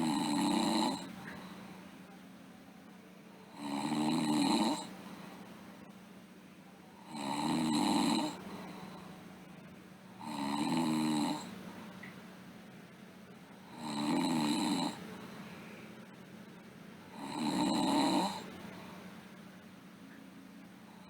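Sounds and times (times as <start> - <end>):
girl snoring: 0.0 - 1.1, 3.6 - 4.9, 7.1 - 8.4, 10.2 - 11.5, 13.7 - 15.0, 17.2 - 18.5
quiet breathing: 0.0 - 2.7, 3.3 - 6.2, 6.8 - 12.1, 13.5 - 19.5, 20.8 - 21.0.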